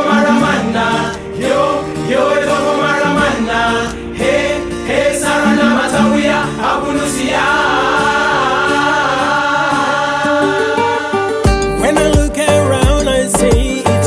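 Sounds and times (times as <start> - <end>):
choir singing in harmony: 0.0 - 11.8
drum beat: 11.5 - 13.9
bass: 11.5 - 14.0.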